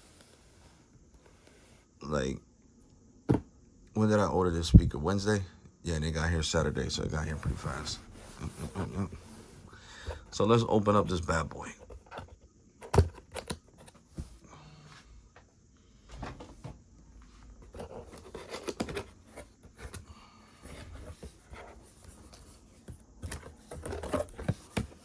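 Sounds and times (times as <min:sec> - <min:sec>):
cardboard rustling: 0:07.3 - 0:10.3, 0:17.6 - 0:25.0
cardboard box handling: 0:07.4 - 0:09.4, 0:20.6 - 0:25.0.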